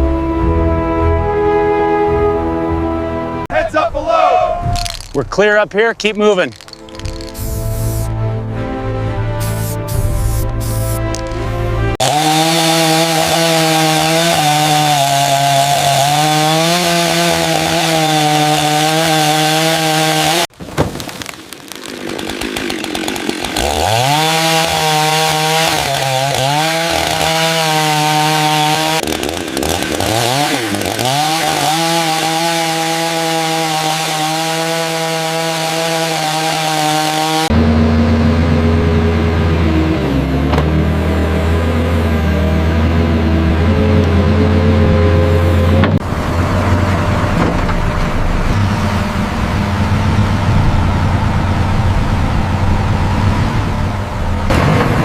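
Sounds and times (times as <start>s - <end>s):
chainsaw cutting wood: 11.1s - 37.6s
low hum: 37.5s - 55.0s.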